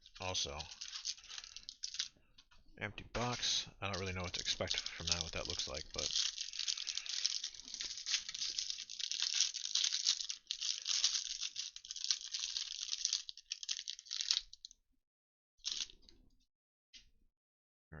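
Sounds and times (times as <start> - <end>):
plastic wrapper tearing and crinkling: 0.0 - 2.1, 3.9 - 14.7, 15.6 - 15.9.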